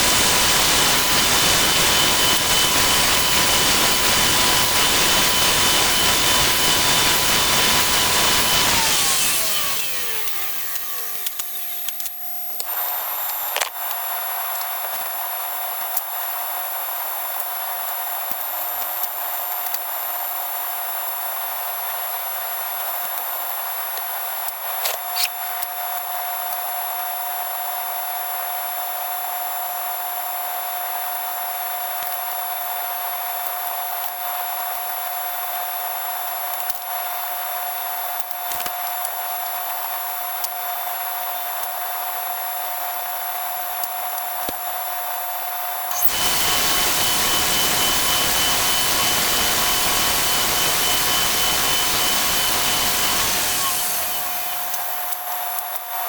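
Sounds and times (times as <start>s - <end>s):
power tool motor whining down: 0.0s - 13.7s, 45.8s - 55.6s.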